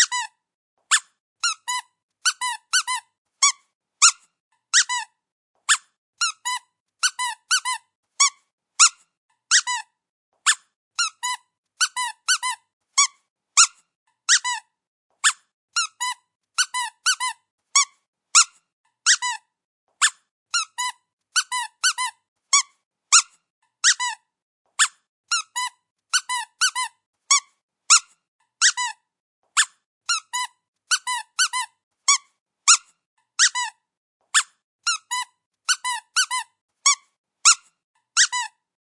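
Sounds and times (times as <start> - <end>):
dog squeaky toy squeaking: 0.0 - 38.6.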